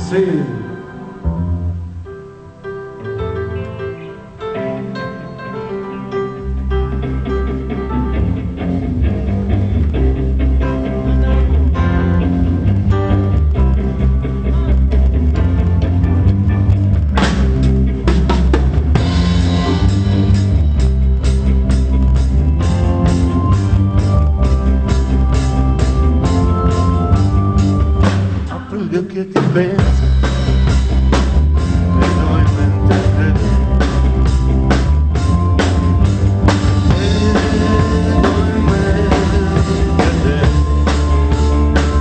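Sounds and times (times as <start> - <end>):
bass guitar: 0.0 - 42.0
guitar chords: 0.0 - 42.0
drum kit beat with cymbals: 17.1 - 28.8, 29.4 - 42.0.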